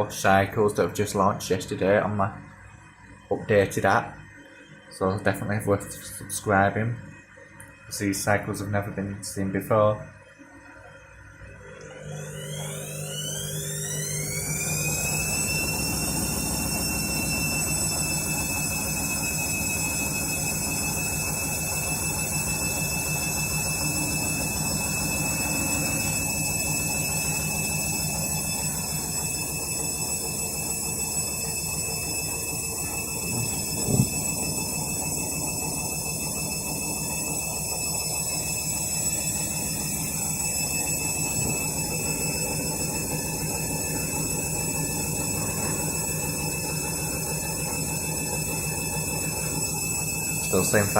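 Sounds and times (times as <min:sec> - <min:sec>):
washing machine motor whine: 0:00.0 - 0:50.9.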